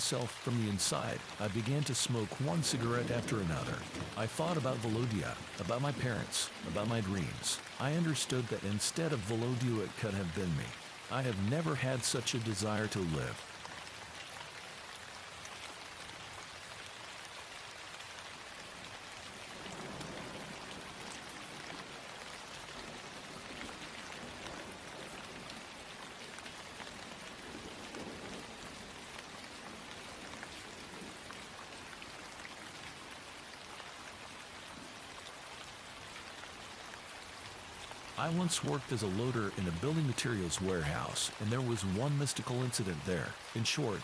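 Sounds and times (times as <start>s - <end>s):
steady rain: 0.0s - 44.0s.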